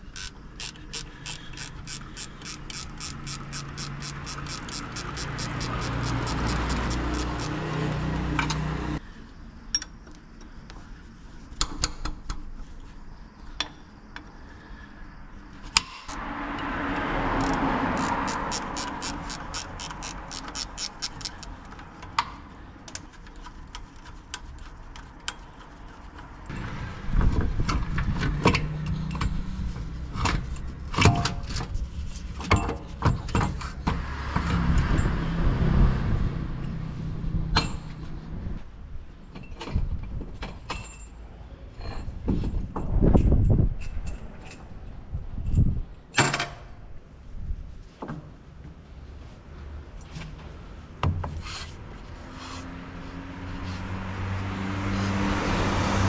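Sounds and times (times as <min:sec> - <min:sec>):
metal hand tools clanking and ratcheting: 0:00.1 - 0:07.7, 0:17.4 - 0:21.8.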